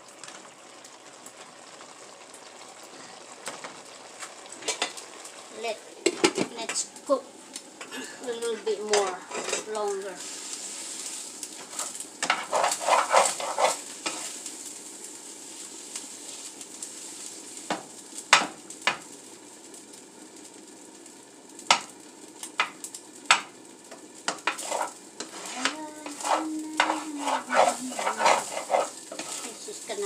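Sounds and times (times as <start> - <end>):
food sizzling in a pan: 0.0 - 30.0
utensil scraping a pan: 9.2 - 10.3, 11.5 - 14.4, 24.3 - 30.0.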